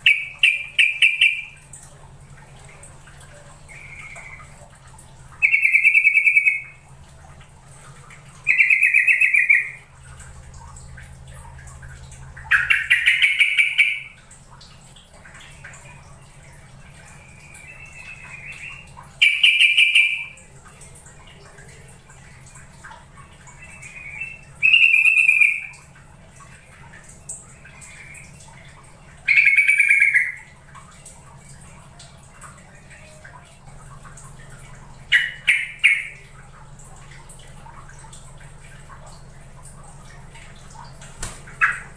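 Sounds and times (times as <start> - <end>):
bulbul bubbling calls: 0.0 - 1.8, 2.6 - 4.7, 5.3 - 6.9, 8.2 - 9.9, 12.2 - 14.2, 15.3 - 20.6, 21.2 - 30.6, 32.6 - 36.4, 41.4 - 41.9.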